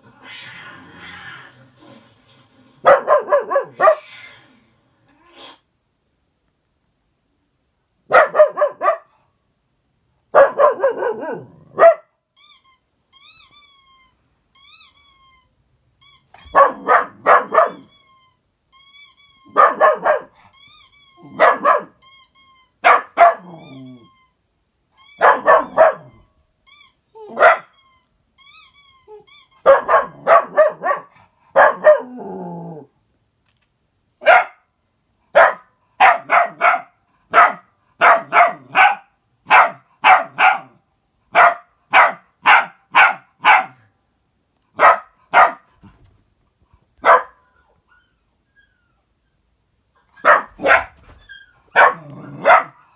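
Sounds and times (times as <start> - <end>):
dog barking: 2.8 - 4.0, 8.1 - 9.2, 10.3 - 12.1, 16.5 - 17.9, 19.5 - 20.4, 21.3 - 22.0, 22.8 - 23.6, 25.2 - 26.2, 27.3 - 27.7, 29.6 - 32.1, 34.2 - 34.7, 35.3 - 43.9, 44.8 - 45.7, 47.0 - 47.4, 50.2 - 51.0, 51.7 - 52.9.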